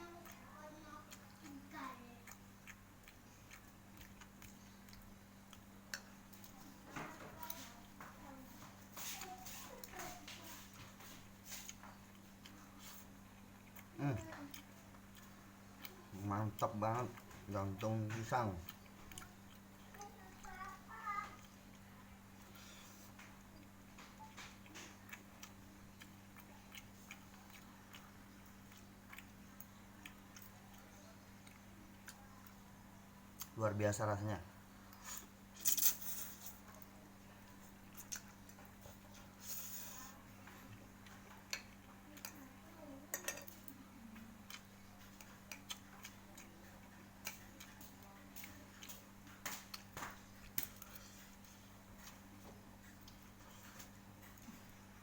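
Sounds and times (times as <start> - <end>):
steady low hum: 0.0 - 55.0
person chewing food: 0.1 - 33.6, 34.8 - 55.0
wet chewing smacks and clicks: 1.0 - 6.7, 23.0 - 32.6, 44.4 - 54.8.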